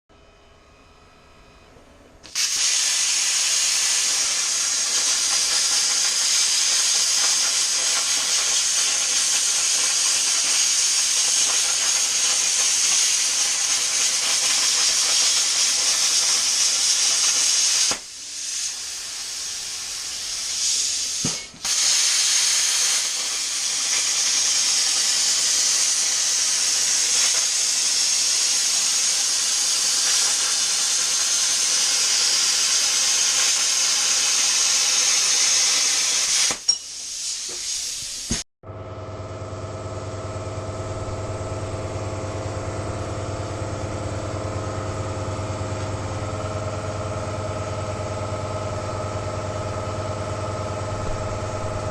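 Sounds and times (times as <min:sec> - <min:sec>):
plasma cutter arc hissing: 0:02.2 - 0:38.4.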